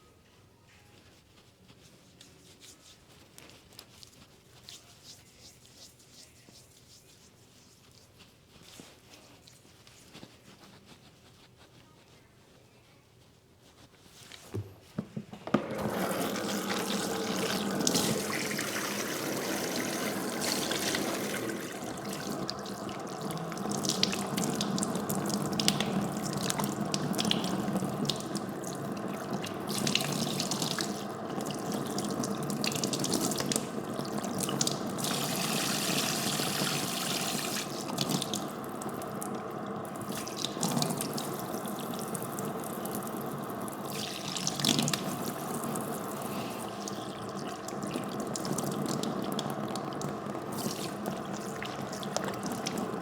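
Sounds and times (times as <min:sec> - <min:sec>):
tap water splashing into basin: 0:14.6 - 0:53.0.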